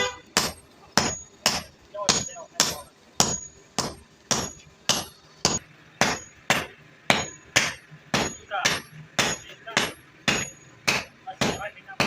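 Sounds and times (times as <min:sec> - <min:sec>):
hammer striking iron on anvil: 0:00.0 - 0:12.0.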